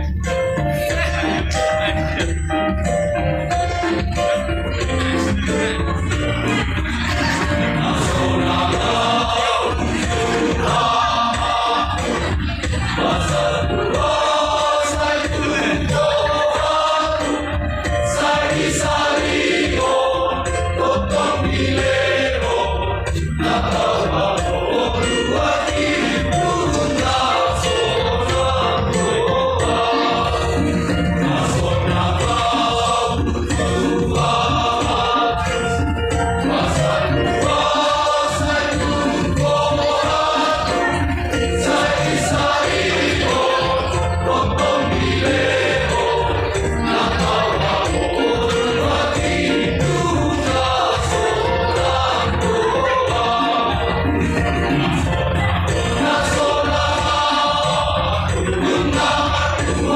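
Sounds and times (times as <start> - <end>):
choir singing a hymn: 3.5 - 59.9.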